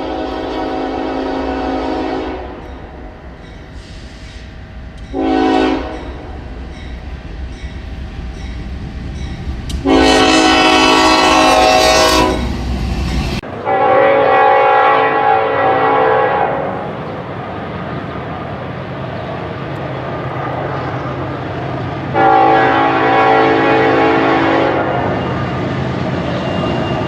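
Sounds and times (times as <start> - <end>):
locomotive air horn blasts: 0.0 - 2.6, 5.1 - 6.2, 9.8 - 12.5, 13.6 - 16.8, 22.2 - 25.2
moving train rumble: 0.0 - 27.0.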